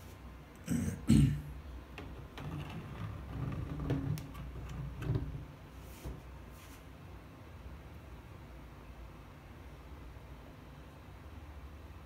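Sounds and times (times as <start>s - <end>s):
rustle of handling: 5.7s - 6.9s.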